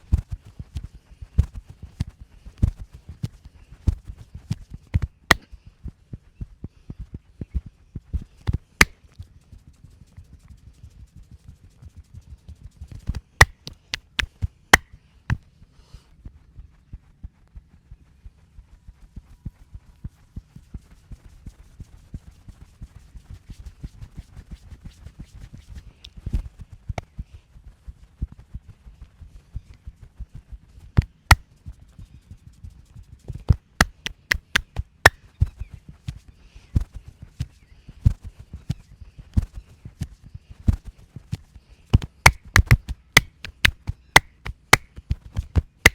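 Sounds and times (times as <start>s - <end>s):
hands patting and rubbing: 0.0s - 5.5s, 8.2s - 9.2s, 13.0s - 15.4s, 31.0s - 31.7s, 33.3s - 36.2s, 36.8s - 45.9s
sharp slaps: 13.2s - 14.9s, 33.6s - 35.2s, 42.0s - 45.9s
sharp clicks: 13.4s - 14.3s, 33.6s - 35.2s, 42.0s - 44.9s.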